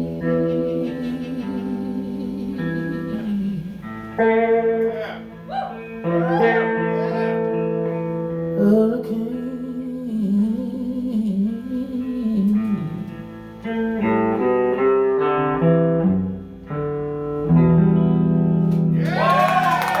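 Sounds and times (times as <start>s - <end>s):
guitar chords: 0.0s - 20.0s
crowd cheering: 19.0s - 20.0s.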